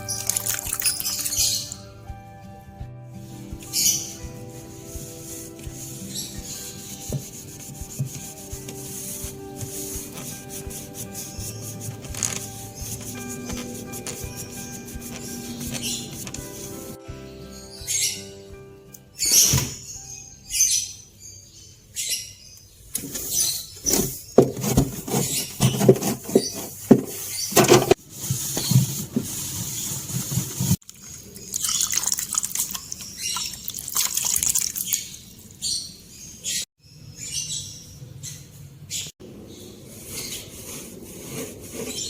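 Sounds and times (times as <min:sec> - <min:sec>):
water running and splashing: 0:00.0 - 0:01.6, 0:30.8 - 0:35.0
knocks and clatter of washing: 0:05.8 - 0:17.0, 0:23.9 - 0:30.8.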